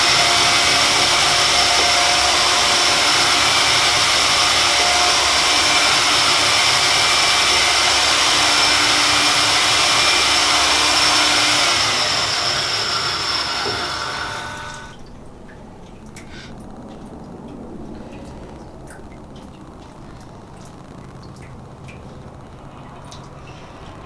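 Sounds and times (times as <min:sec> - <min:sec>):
machining machine hissing whir: 0:00.0 - 0:15.0.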